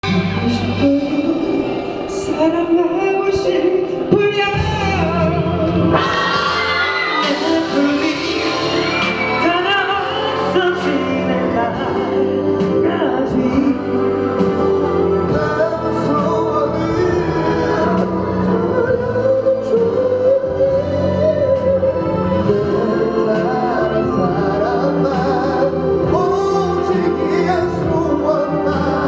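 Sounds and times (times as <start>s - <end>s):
amplified backing track: 0.0s - 29.0s
man singing pop ballad: 0.0s - 29.0s.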